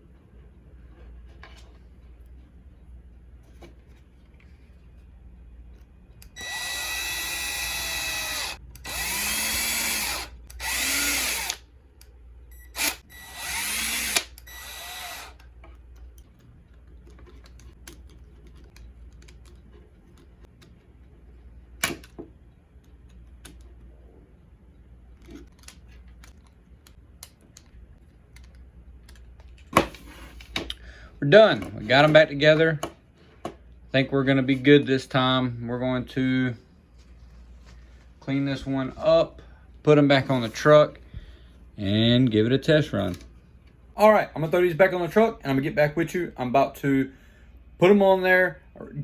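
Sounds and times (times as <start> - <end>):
power driver whirring: 6.2 - 15.5.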